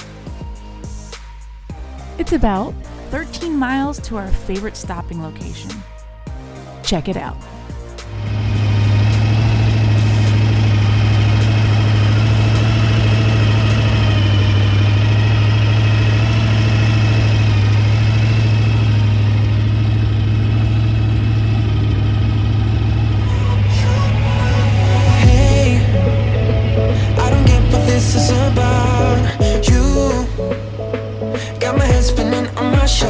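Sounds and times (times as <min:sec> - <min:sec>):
boat engine humming: 0:07.5 - 0:33.0.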